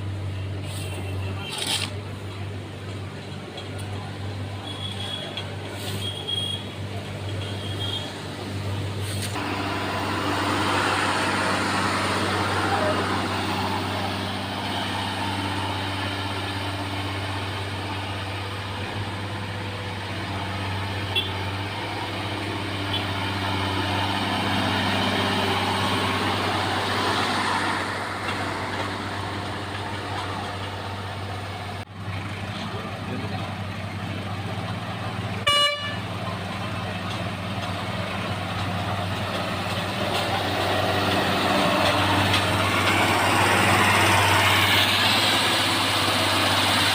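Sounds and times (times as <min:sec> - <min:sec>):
heavy diesel engines running: 0:00.0 - 0:46.9
short horn toot: 0:35.4 - 0:36.0.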